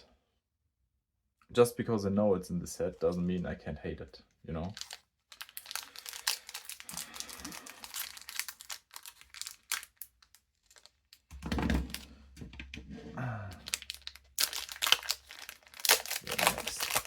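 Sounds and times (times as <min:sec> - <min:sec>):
foil pack crinkling and tearing: 0:04.6 - 0:11.3, 0:13.6 - 0:17.0.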